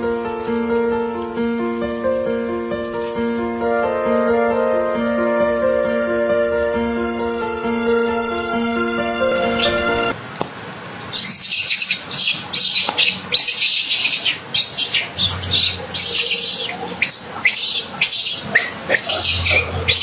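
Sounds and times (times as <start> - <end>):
baby monkey squealing: 11.1 - 20.0.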